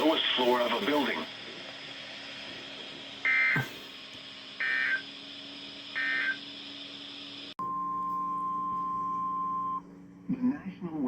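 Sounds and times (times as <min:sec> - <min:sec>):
warbling digital data bursts: 0:00.0 - 0:07.6
faint steady hum: 0:00.0 - 0:11.0.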